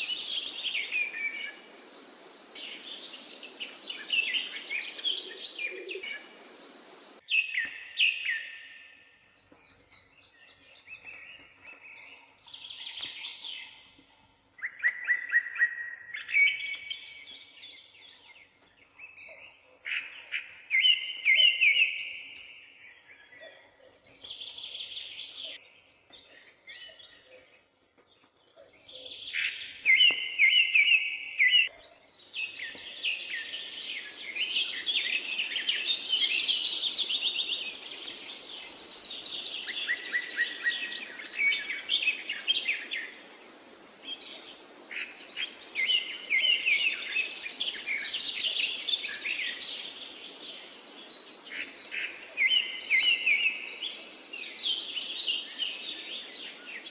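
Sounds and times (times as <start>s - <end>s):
background hiss: 0.0s - 7.3s, 32.1s - 56.9s
songbirds chirping and trilling: 0.0s - 56.9s.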